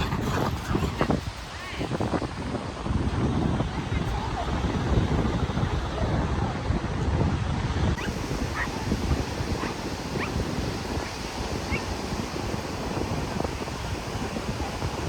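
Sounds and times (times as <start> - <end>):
surf: 0.0 - 15.0
wind: 0.0 - 15.0
dog whimpering: 9.6 - 10.4.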